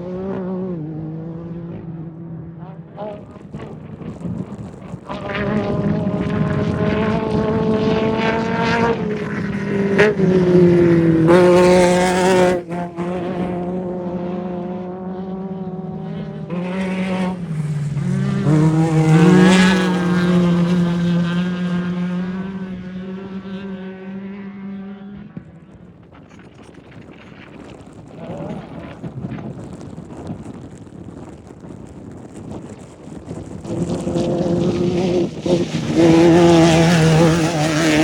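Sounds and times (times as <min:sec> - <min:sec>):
race vehicle engine revving: 0:00.0 - 0:25.4, 0:33.4 - 0:38.0.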